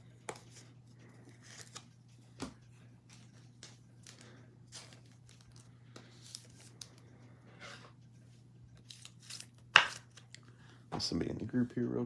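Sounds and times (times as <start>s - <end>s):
trading cards and wrappers rustling: 0.2s - 7.2s, 8.8s - 10.6s.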